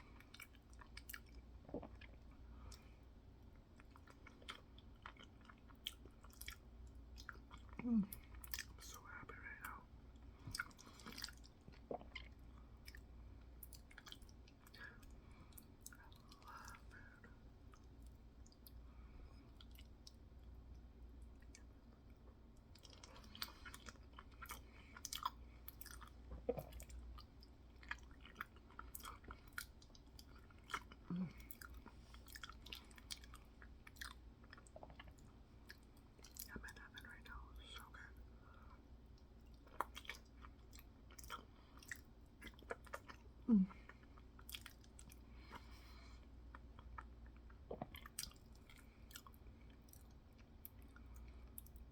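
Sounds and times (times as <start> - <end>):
wet open-mouthed chewing: 10.2 - 18.8, 21.4 - 36.9, 38.6 - 51.9.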